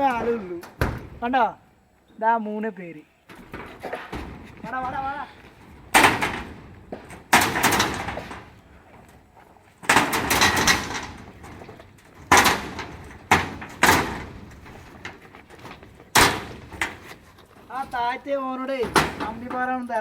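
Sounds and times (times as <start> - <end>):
steel bars clanking: 3.4 - 9.1, 9.8 - 19.8.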